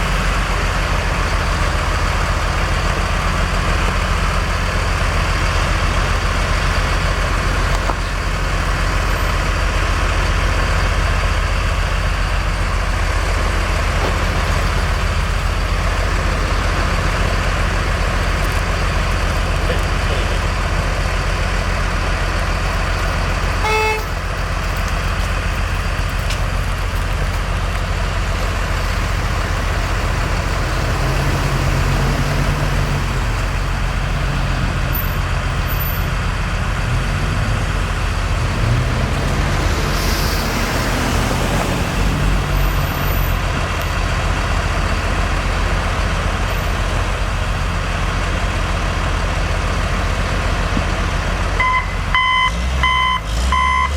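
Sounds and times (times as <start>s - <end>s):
heavy vehicle engines: 0.0s - 53.9s
road traffic: 0.0s - 53.9s
short horn toot: 23.6s - 24.2s.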